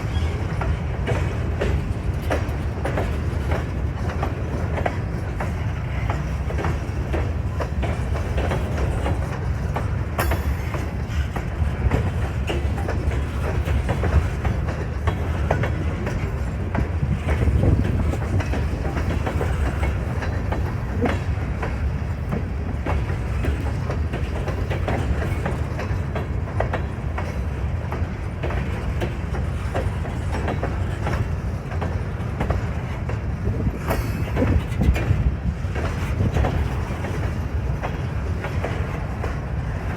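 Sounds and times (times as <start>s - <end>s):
train cars rumbling: 0.0s - 39.9s.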